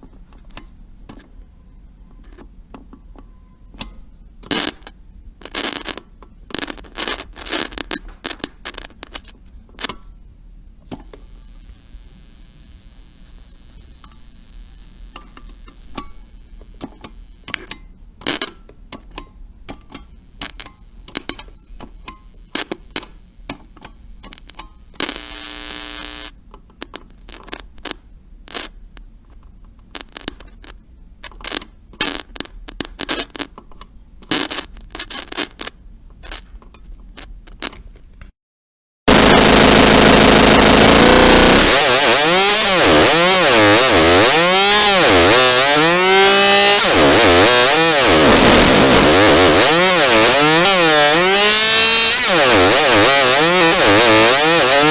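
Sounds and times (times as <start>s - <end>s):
radio interference crackles: 4.5s - 9.3s, 11.0s - 17.5s, 20.2s - 28.8s, 29.9s - 30.8s, 31.4s - 33.5s, 34.3s - 36.5s, 39.1s - 54.9s
buzzy tone: 11.1s - 17.5s, 24.9s - 26.4s, 39.1s - 54.9s.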